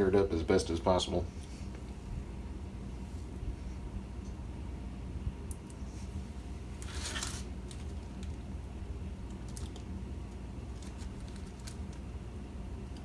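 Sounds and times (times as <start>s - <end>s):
steady low hum: 0.0s - 13.0s
scratchy rustle: 6.8s - 8.0s.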